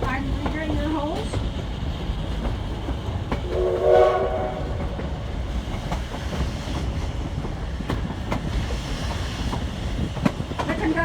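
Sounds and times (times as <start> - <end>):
wheels clicking over rail joints: 0.0 - 3.5, 4.8 - 11.0
train rumbling: 0.0 - 11.0
steam locomotive whistle: 3.5 - 5.0.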